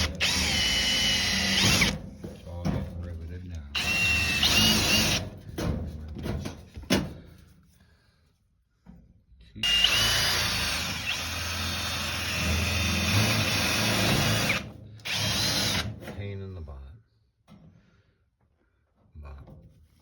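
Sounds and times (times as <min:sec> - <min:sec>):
power drill whining: 0:00.0 - 0:02.0, 0:03.8 - 0:05.2, 0:09.6 - 0:16.0.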